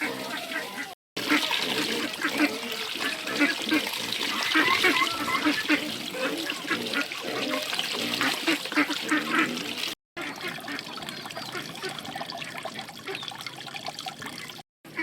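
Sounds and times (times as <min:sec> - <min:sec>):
trickling water: 0:00.0 - 0:15.0.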